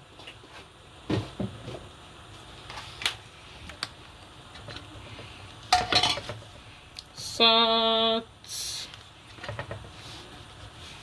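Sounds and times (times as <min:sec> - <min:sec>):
utensils clattering: 0:05.7 - 0:06.4.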